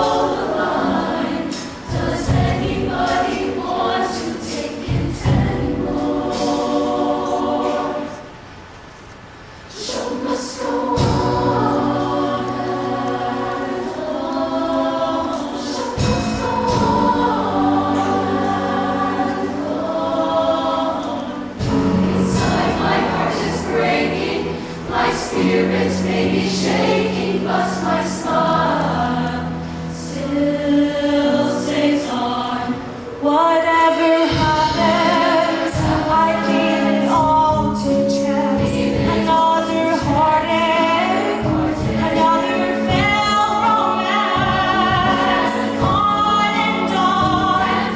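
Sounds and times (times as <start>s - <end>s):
drum hits: 0.0s - 6.9s, 11.0s - 12.1s, 15.7s - 20.6s, 21.5s - 29.4s
choir singing in harmony: 0.0s - 47.9s
sustained bass notes: 16.0s - 31.1s.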